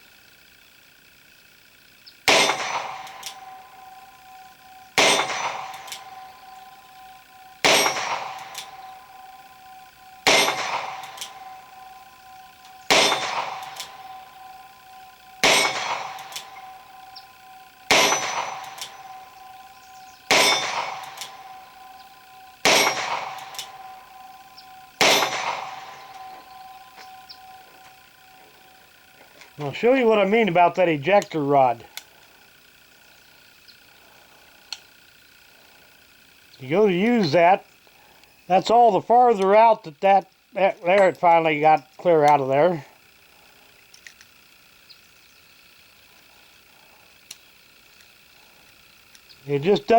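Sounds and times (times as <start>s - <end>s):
steel target ringing clang: 2.3s - 31.7s
revolver shots: 7.6s - 19.2s.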